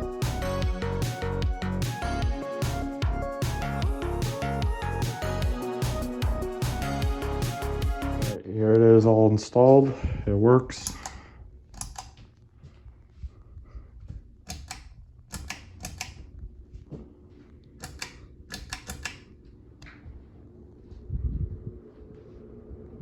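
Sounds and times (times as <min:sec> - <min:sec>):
ceiling fan humming: 0:09.9 - 0:23.0
sharp clicks and taps: 0:11.8 - 0:12.3, 0:14.4 - 0:16.3, 0:17.8 - 0:20.0.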